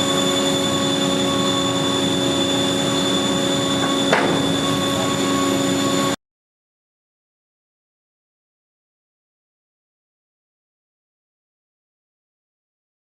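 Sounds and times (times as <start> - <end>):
rush of noise: 0.0 - 6.2
woodworking machine whine: 0.0 - 6.2.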